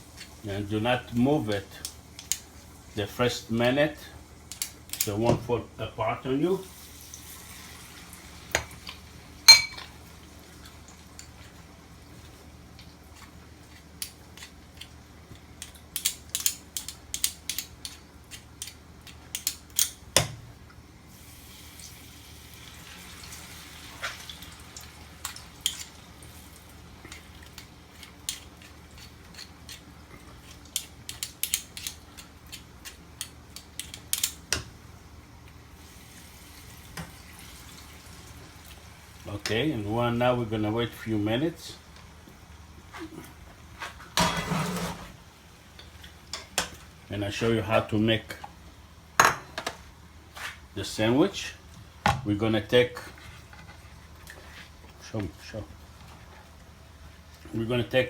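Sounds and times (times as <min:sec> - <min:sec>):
food deep-frying in oil: 0:06.4 - 0:39.4
metal clink: 0:09.5 - 0:09.8.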